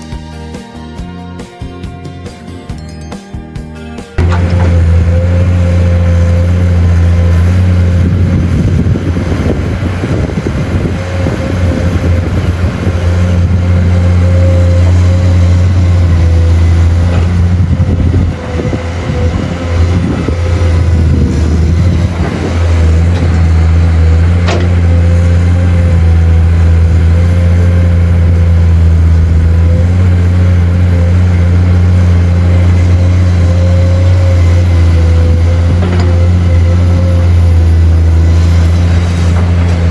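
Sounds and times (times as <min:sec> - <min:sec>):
excavator diesel engine whining: 0:03.7 - 0:39.9
soil crackling and scraping: 0:04.2 - 0:39.9.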